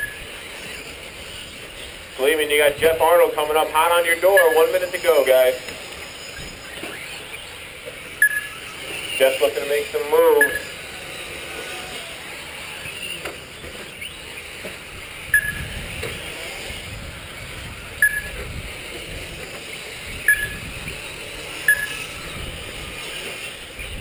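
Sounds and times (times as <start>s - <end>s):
short electronic beeps: 0.0s - 0.2s, 4.3s - 4.6s, 8.2s - 8.8s, 10.3s - 10.8s, 15.3s - 15.8s, 18.0s - 18.4s, 20.2s - 20.8s, 21.6s - 22.2s
rc trucks racing hum: 0.0s - 24.0s.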